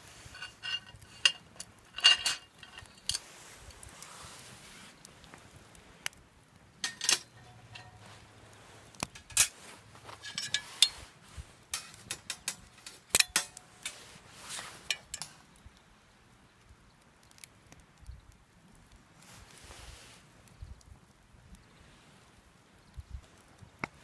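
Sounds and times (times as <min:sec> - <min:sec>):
metal gear clinking and clanking: 0:00.2 - 0:03.2, 0:06.8 - 0:08.0, 0:09.2 - 0:09.6, 0:10.2 - 0:10.9, 0:11.7 - 0:14.0.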